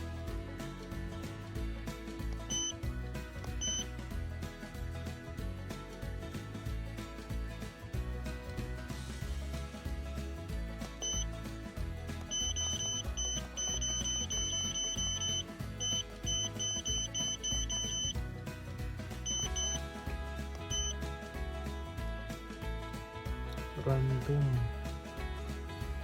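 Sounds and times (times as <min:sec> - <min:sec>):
background music: 0:00.0 - 0:26.0
short electronic beeps: 0:02.4 - 0:02.8, 0:03.5 - 0:04.0, 0:11.0 - 0:11.4, 0:12.3 - 0:18.2, 0:19.2 - 0:19.9, 0:20.6 - 0:21.0.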